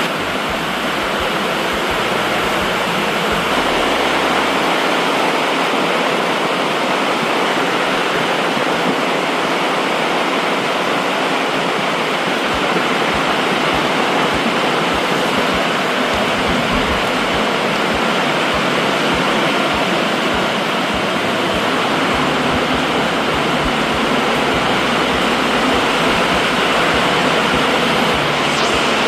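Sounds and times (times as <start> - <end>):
heavy rain pouring: 7.8 - 29.0.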